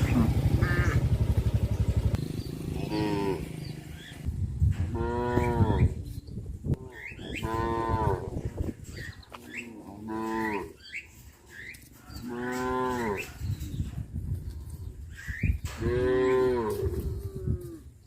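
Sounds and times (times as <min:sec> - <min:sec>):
cows mooing: 0:00.0 - 0:01.4, 0:02.6 - 0:04.1, 0:04.9 - 0:06.0, 0:06.7 - 0:08.5, 0:09.6 - 0:10.8, 0:12.2 - 0:13.4, 0:15.7 - 0:17.9
low rumble: 0:00.0 - 0:06.8.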